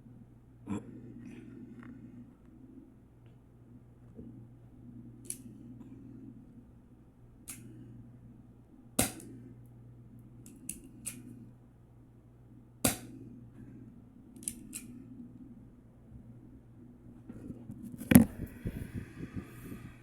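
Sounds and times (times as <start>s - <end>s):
low steady hum: 0.0s - 20.0s
gun handling clicks: 5.2s - 5.5s, 7.5s - 7.7s, 10.4s - 11.3s, 14.3s - 15.0s
airsoft pistol shots: 9.0s - 9.3s, 12.9s - 13.1s.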